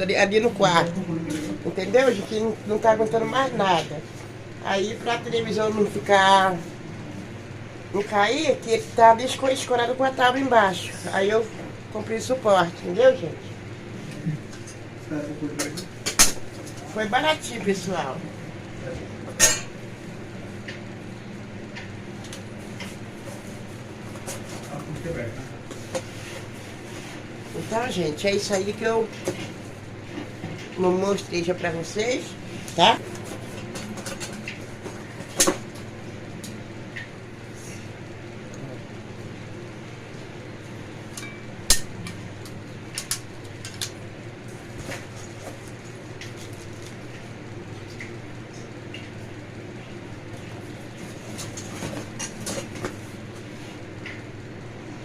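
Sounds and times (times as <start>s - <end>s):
steady low hum: 0.0s - 55.0s.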